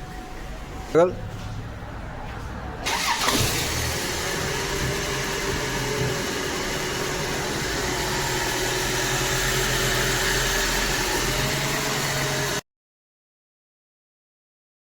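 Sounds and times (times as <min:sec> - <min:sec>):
car engine idling: 0:02.6 - 0:12.6.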